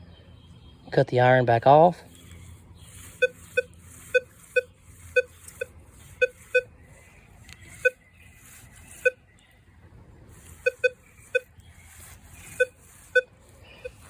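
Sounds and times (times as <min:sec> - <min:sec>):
metal detector low beeps: 0:02.1 - 0:09.4, 0:10.3 - 0:14.0.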